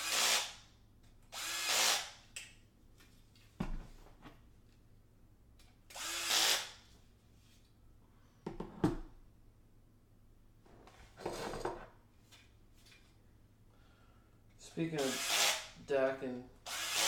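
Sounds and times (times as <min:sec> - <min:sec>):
cordless drill running: 0:00.0 - 0:00.6, 0:01.4 - 0:02.2, 0:05.9 - 0:06.8, 0:15.0 - 0:15.8, 0:16.6 - 0:17.0.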